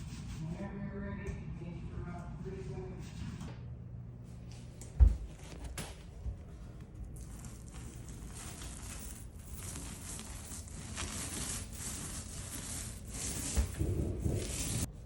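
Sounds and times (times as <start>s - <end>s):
paint roller on wall: 5.0s - 15.0s.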